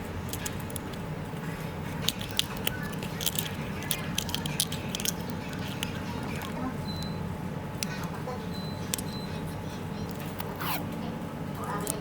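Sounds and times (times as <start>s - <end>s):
steady low hum: 0.0s - 12.0s
small tools clicking and tapping: 2.0s - 6.6s.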